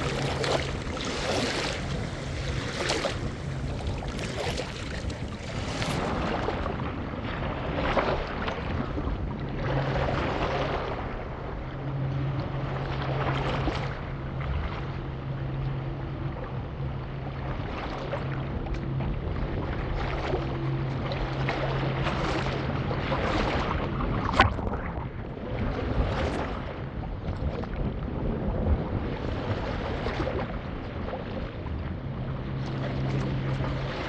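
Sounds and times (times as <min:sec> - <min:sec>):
water rushing and splashing: 0:00.0 - 0:12.2, 0:17.6 - 0:26.9
wind noise: 0:00.0 - 0:12.7, 0:16.2 - 0:34.0
low hum: 0:00.0 - 0:34.0.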